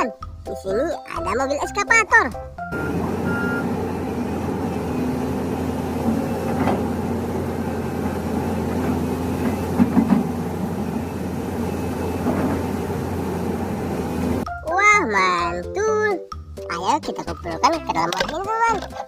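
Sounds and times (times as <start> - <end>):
mechanical rumble with low hum: 2.7 - 14.5.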